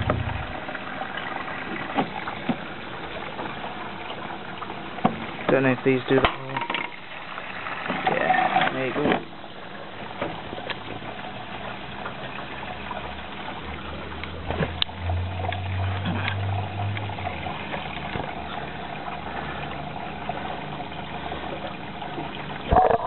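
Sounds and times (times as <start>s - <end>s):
steady low hum: 0.0s - 0.9s
water running into washing machine: 0.0s - 23.0s.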